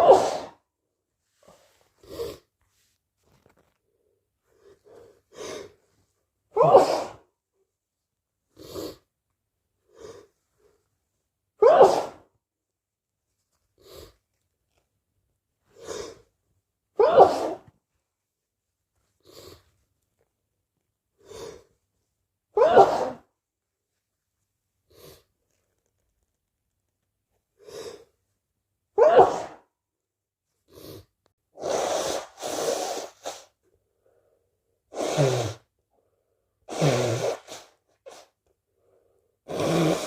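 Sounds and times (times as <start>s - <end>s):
person sneezing: 0.0s - 0.6s, 6.6s - 7.2s, 11.6s - 12.3s, 17.0s - 17.7s, 22.6s - 23.3s, 29.0s - 29.6s, 31.6s - 33.5s, 34.9s - 35.7s, 36.7s - 38.4s, 39.5s - 40.0s.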